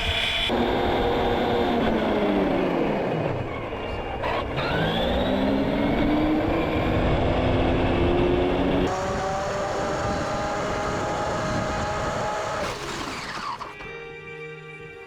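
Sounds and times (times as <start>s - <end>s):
electric toy truck motor whining: 0.5s - 7.2s, 8.8s - 13.9s.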